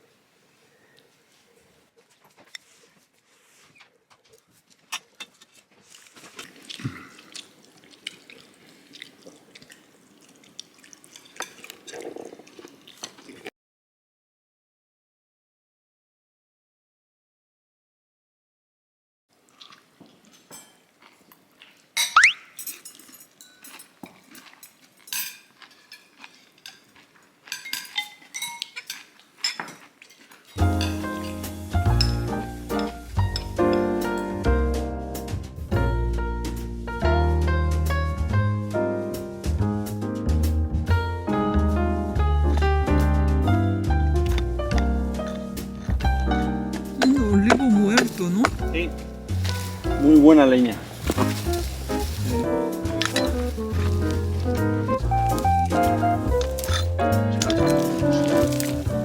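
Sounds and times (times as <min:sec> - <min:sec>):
water dripping and splashing: 0:05.9 - 0:13.5, 0:46.9 - 0:59.0
cutlery clinking on dishes: 0:11.2 - 0:11.8, 0:20.3 - 0:20.9, 0:22.0 - 0:34.4, 0:49.4 - 0:54.5, 0:56.4 - 0:59.0.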